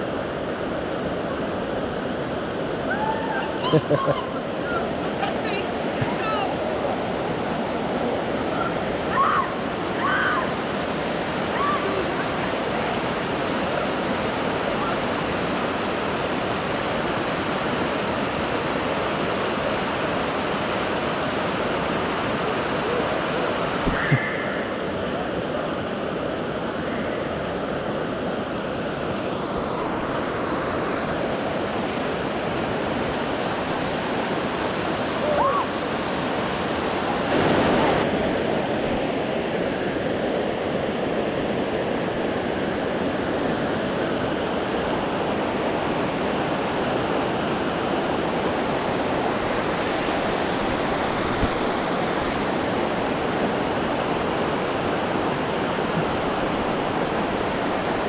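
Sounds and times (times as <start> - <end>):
waterfall roaring: 0.0 - 58.0.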